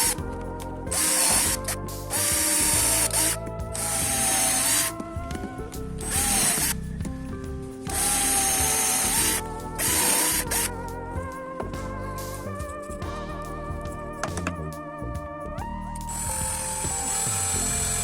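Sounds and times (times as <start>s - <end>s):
background music: 0.0s - 18.0s
power drill running: 0.9s - 4.9s, 6.0s - 6.8s, 7.9s - 10.7s, 16.1s - 18.0s.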